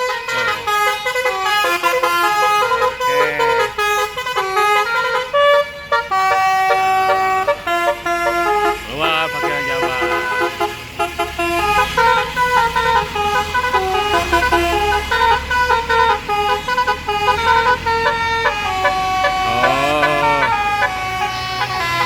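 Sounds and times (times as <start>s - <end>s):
diesel engine idling: 0.0s - 22.0s
multi-tone musical bus horn: 0.0s - 22.0s.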